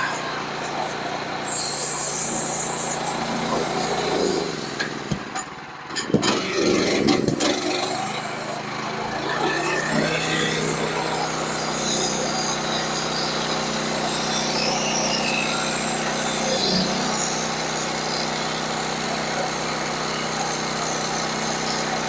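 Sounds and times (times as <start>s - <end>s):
small engine running: 0.0s - 22.0s.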